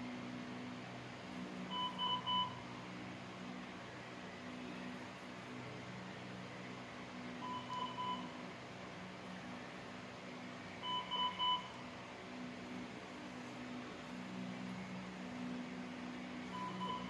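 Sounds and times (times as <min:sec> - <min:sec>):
steady low hum: 0:00.0 - 0:17.0
monitor alarm short beeps: 0:07.4 - 0:08.3, 0:10.8 - 0:11.7, 0:16.6 - 0:17.0.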